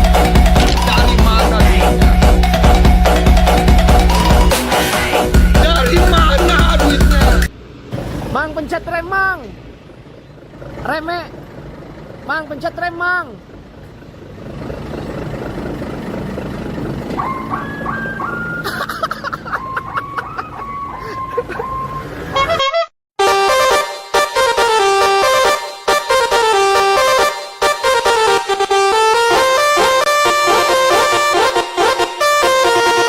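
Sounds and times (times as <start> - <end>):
musical truck horn tune: 0.0 - 7.5, 20.6 - 33.0
truck engine rumbling: 0.0 - 33.0.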